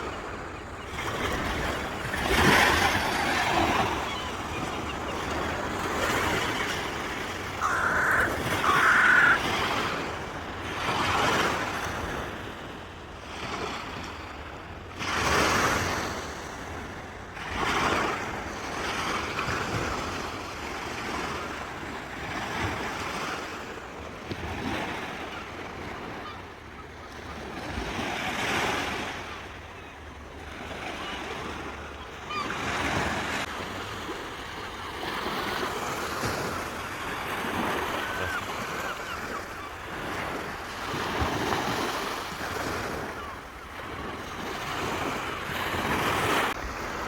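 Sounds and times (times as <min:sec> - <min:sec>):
sea waves breaking on shore: 0:00.0 - 0:47.0.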